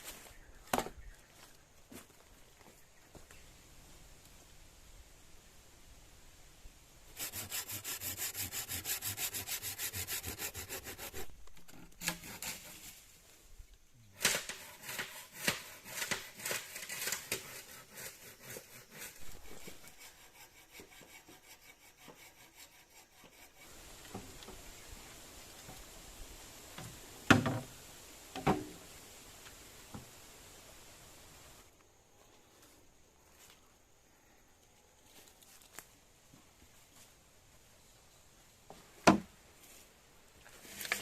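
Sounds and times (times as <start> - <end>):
hand saw cutting bamboo: 7.2 - 12.9, 14.2 - 23.8.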